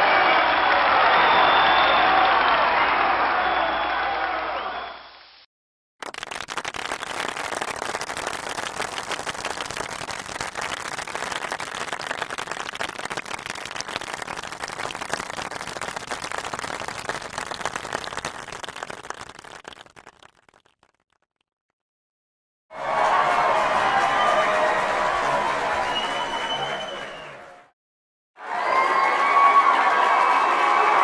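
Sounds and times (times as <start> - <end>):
crowd applauding: 0.0 - 5.0, 6.0 - 20.8, 22.7 - 27.7, 28.4 - 31.0.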